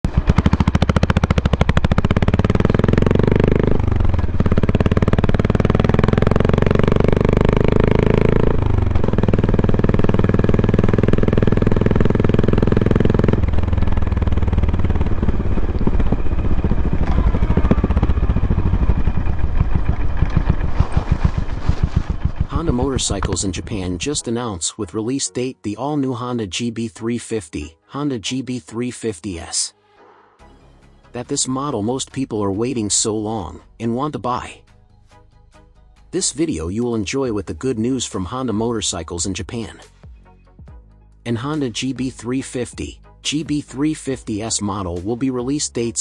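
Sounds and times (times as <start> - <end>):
motorcycle engine running: 0.0 - 24.2.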